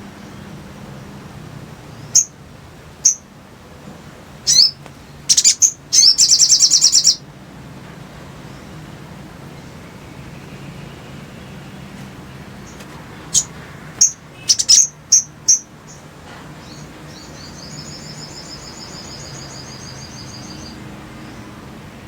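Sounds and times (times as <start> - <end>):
bird chirps: 2.0 - 2.3, 3.0 - 3.2, 4.5 - 7.2, 12.6 - 21.5.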